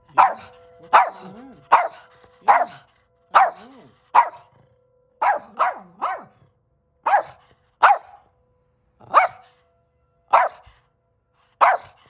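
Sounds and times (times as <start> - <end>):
dog barking sharply: 0.2 - 1.2, 7.1 - 8.1.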